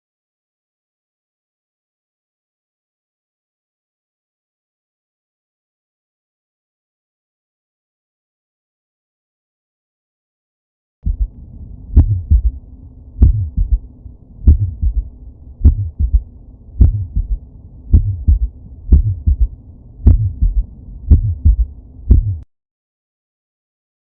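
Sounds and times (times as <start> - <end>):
heartbeat gallop thuds: 11.0 - 11.4, 12.0 - 12.6, 13.2 - 13.8, 14.5 - 22.4.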